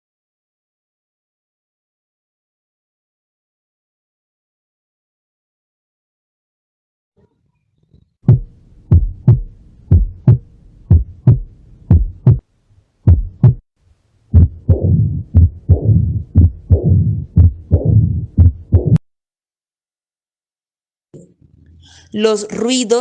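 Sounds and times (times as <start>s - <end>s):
heartbeat: 8.2s - 12.4s, 13.0s - 13.6s, 14.3s - 19.0s
rushing between heartbeats: 8.2s - 12.4s, 13.0s - 13.6s, 14.3s - 19.0s.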